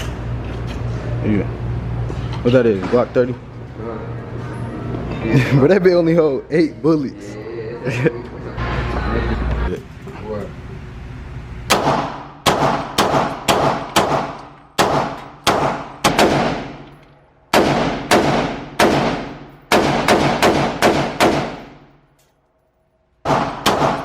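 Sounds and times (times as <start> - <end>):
gunshots with echo: 11.7 - 16.9, 17.5 - 21.8, 23.2 - 24.0.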